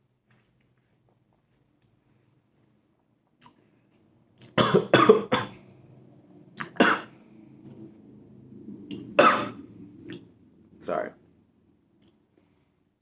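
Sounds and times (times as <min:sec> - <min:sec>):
person coughing: 0:04.5 - 0:05.6, 0:06.6 - 0:07.1, 0:09.2 - 0:09.6.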